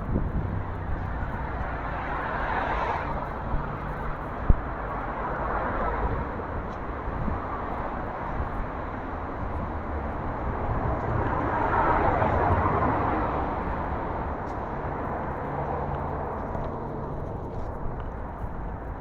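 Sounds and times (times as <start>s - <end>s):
vehicle passing: 9.6s - 19.0s.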